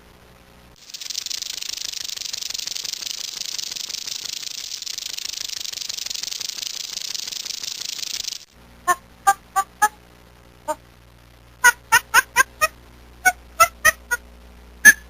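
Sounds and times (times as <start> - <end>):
animal buzzing rattle: 0.8 - 8.5.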